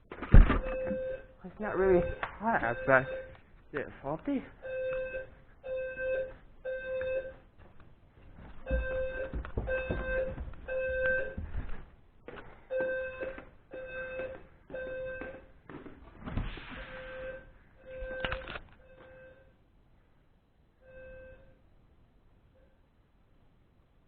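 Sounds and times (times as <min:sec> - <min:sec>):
fire alarm beeps: 0:00.6 - 0:03.4, 0:04.6 - 0:07.4, 0:08.6 - 0:11.5, 0:12.7 - 0:15.5, 0:16.8 - 0:19.6, 0:20.8 - 0:21.6.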